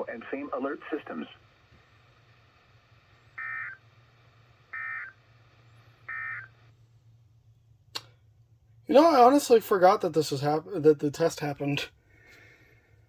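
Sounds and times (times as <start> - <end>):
faint radio hiss: 0.0 - 13.0
low steady hum: 0.0 - 13.0
buzzy data bursts: 3.4 - 3.8.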